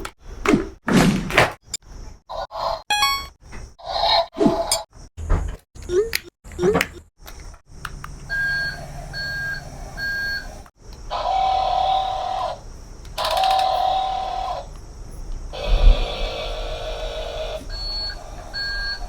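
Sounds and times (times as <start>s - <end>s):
toy short electronic beeps: 2.9s - 3.3s.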